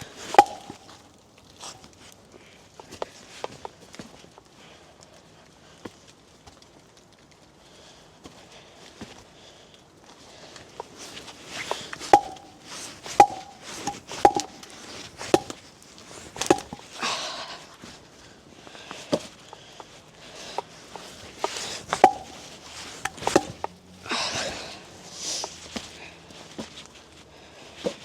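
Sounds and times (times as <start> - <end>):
hatchet chopping firewood: 0.3 - 1.0, 11.7 - 15.6, 16.4 - 16.9, 21.4 - 23.8.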